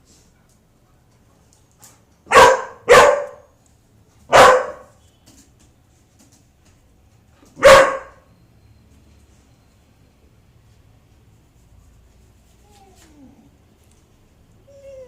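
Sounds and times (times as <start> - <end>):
dog barking: 2.3 - 3.5, 4.3 - 5.0, 7.6 - 8.3.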